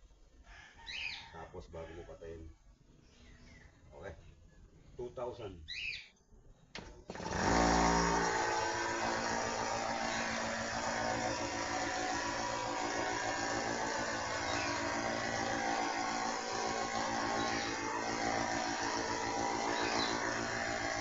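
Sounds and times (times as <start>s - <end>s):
air compressor humming: 6.8s - 21.0s.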